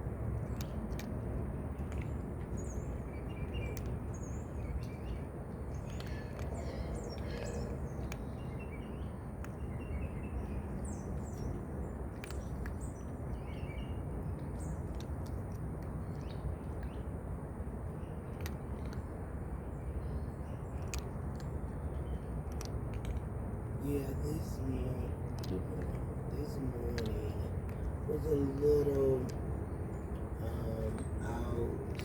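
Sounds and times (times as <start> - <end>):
faint clicks: 25.1 - 31.2.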